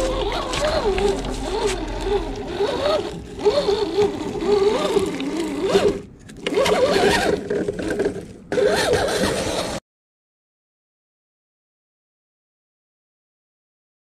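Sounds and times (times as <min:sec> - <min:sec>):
electric motor whining: 0:00.0 - 0:09.8.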